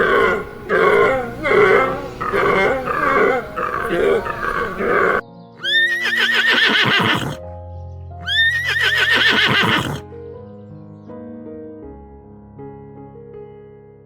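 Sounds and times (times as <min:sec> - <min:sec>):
horse whinnying: 0:00.0 - 0:07.4, 0:08.2 - 0:10.0
soft keyboard background music: 0:00.0 - 0:14.0.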